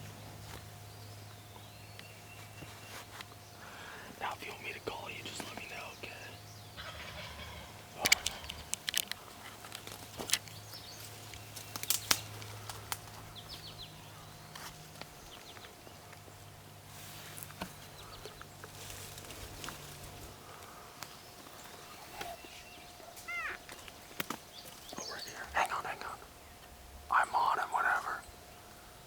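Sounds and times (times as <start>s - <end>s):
songbird chirps: 0.0s - 29.0s
sharp snaps and clicks: 8.0s - 10.6s, 11.3s - 13.2s.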